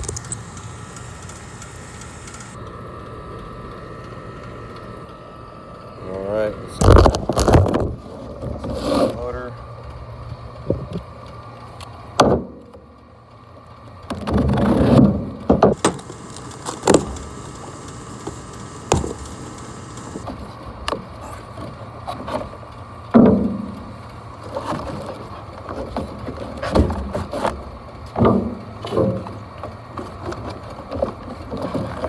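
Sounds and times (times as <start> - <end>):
low steady hum: 0.0 - 5.8, 15.8 - 20.2.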